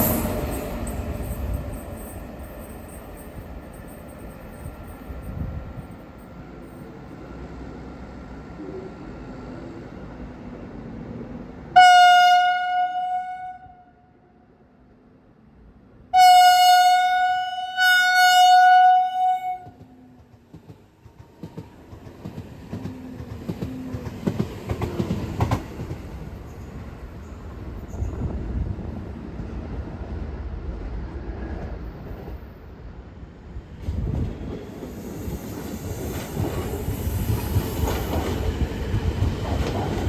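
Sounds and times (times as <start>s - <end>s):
train rolling past: 0.0s - 11.9s, 18.3s - 40.0s
train horn blasts: 11.8s - 14.3s, 16.1s - 19.8s.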